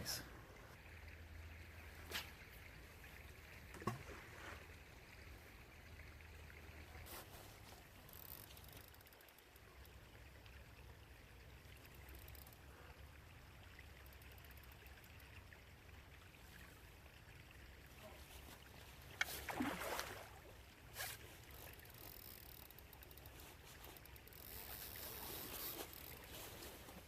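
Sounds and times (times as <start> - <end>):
flowing water: 0.0 - 27.0.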